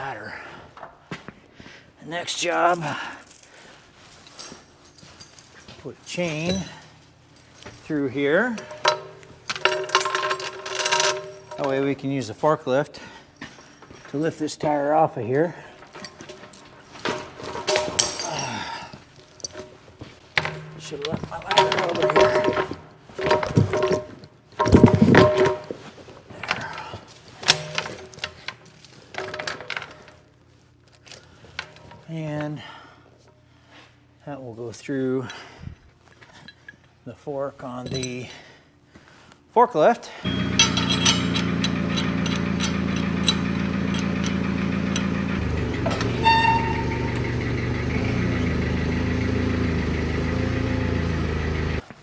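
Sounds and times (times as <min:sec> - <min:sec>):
steel chain clanking and rattling: 0:02.4 - 0:12.3, 0:15.7 - 0:30.2, 0:31.0 - 0:32.7, 0:40.3 - 0:51.8
forklift engine running: 0:40.3 - 0:51.8.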